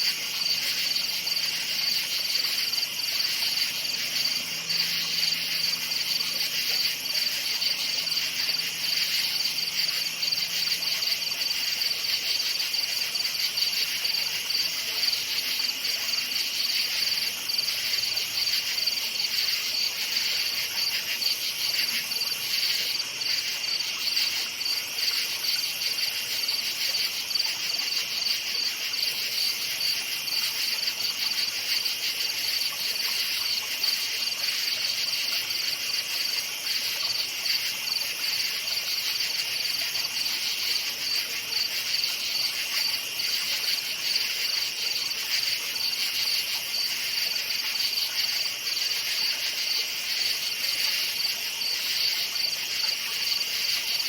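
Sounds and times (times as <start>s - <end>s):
crickets chirping: 0.0s - 54.0s.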